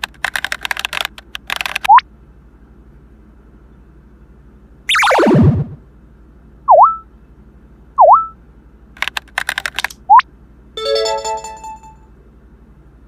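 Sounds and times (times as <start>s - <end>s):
rapid electronic clicks: 0.0s - 2.0s, 9.0s - 10.2s
dipping electronic tones: 4.9s - 5.6s, 6.7s - 7.0s, 8.0s - 8.4s
short upward blip: 4.9s - 5.8s, 6.7s - 7.0s, 8.0s - 8.4s
bright ringing chime: 10.8s - 12.0s.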